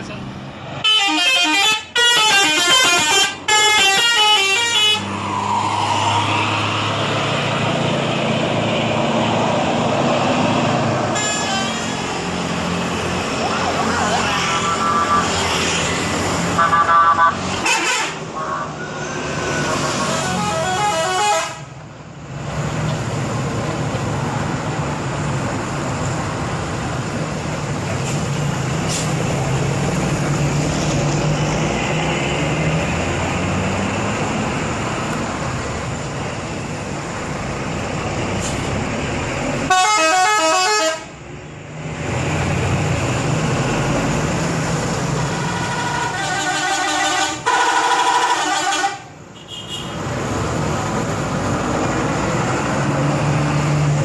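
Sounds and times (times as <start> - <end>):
traffic noise: 0.0 - 54.0
multi-tone bus horn melody: 0.8 - 5.1, 11.1 - 12.2, 16.6 - 19.2, 19.8 - 21.8, 39.7 - 41.2, 45.3 - 50.0.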